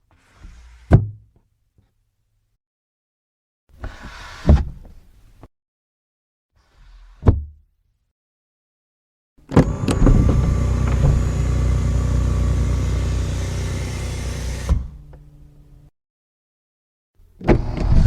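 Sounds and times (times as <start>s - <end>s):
mechanical humming motor: 9.5s - 14.8s.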